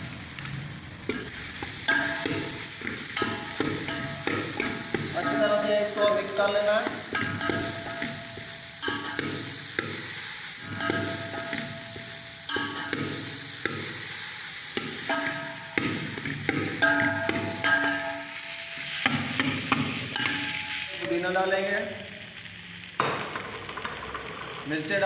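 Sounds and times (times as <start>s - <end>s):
food sizzling in oil: 0.0s - 25.0s
spoon scraping a pan: 1.1s - 14.1s.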